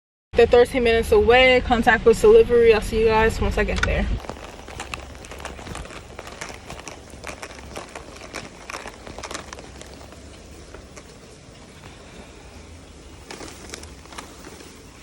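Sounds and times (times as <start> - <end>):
low steady hum: 0.4 - 15.0
steady rain falling: 4.2 - 15.0
raindrops tapping on a surface: 4.6 - 12.2.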